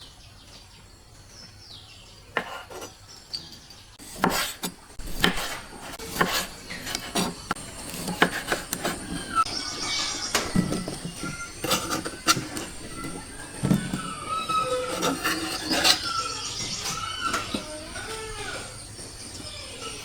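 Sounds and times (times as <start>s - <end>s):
faint bird chirping: 0.0s - 4.0s, 6.6s - 20.0s
hard objects clicking and knocking: 10.3s - 18.2s.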